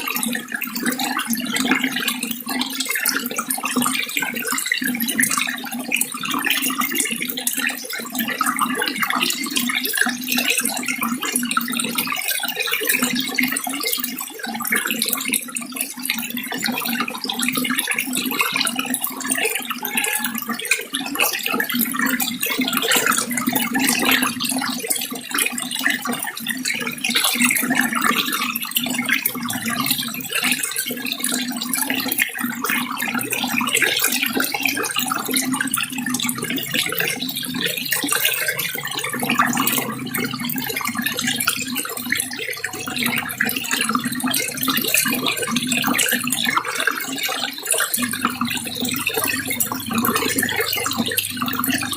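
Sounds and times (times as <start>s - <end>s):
water running and splashing: 31.0s - 51.9s.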